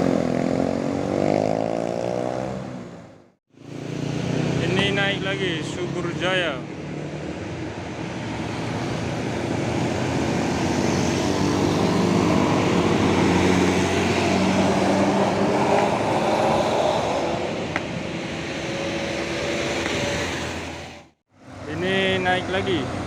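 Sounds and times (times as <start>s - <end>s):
tyre and road noise: 0.0s - 23.0s
bus diesel engine: 4.5s - 23.0s.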